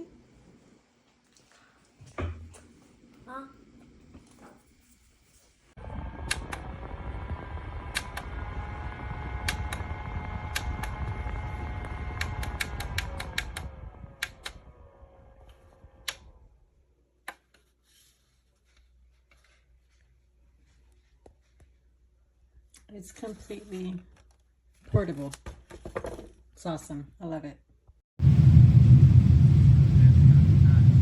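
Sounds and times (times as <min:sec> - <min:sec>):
desk fan running with motor whine: 0:05.8 - 0:16.4
sharp clicks: 0:10.5 - 0:11.2, 0:11.8 - 0:14.6.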